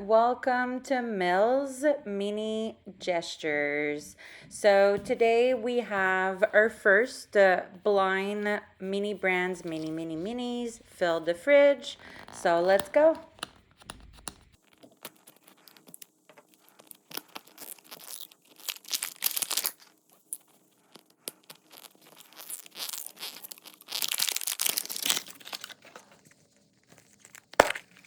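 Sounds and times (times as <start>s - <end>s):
plastic wrapping crinkling: 12.0s - 28.0s.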